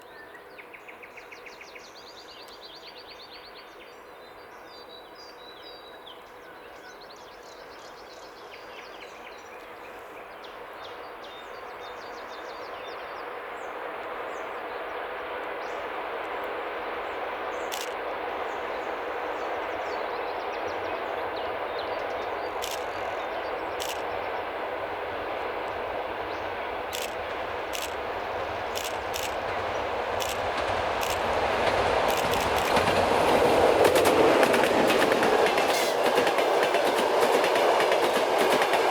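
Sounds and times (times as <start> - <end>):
diesel train passing: 7.6 - 38.9
small birds singing: 17.0 - 28.1
sharp clicks: 17.7 - 18.0, 22.1 - 24.1, 26.9 - 29.6, 30.2 - 35.7.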